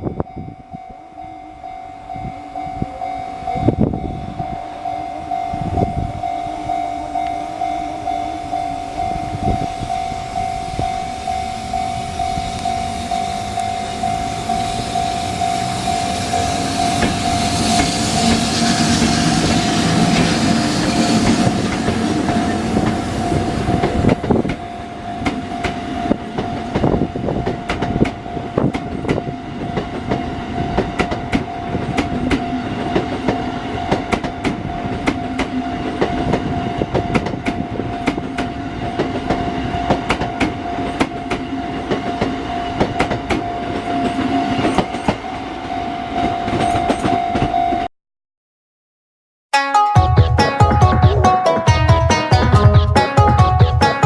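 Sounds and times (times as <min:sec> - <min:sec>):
level crossing warning bell: 0:00.0 - 0:38.0, 0:43.4 - 0:47.9, 0:49.6 - 0:54.0
train passing: 0:00.0 - 0:47.9, 0:50.0 - 0:54.0
train wheels clacking on rails: 0:09.0 - 0:47.5.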